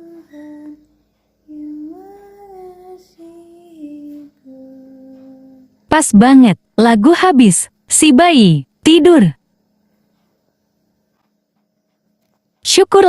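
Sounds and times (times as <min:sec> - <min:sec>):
person softly singing lullaby: 0:00.0 - 0:05.8.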